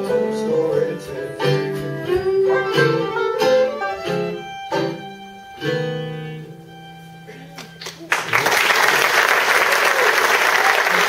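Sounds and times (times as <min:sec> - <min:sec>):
plucked guitar notes: 0:00.0 - 0:08.1
acoustic string band playing: 0:00.0 - 0:08.2.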